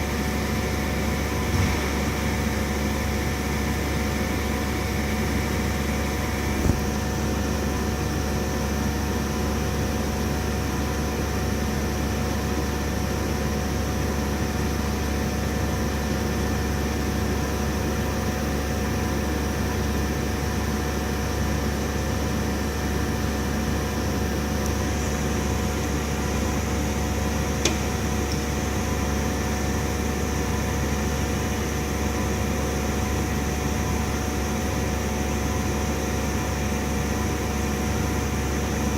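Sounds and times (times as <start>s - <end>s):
milling machine humming: 0.0s - 9.6s, 21.7s - 38.9s.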